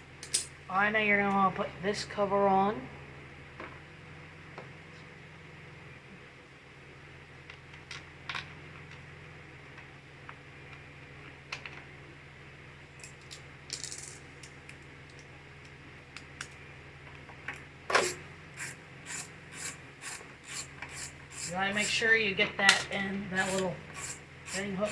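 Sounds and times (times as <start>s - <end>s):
hard parts clicking and tapping: 17.5s - 24.9s.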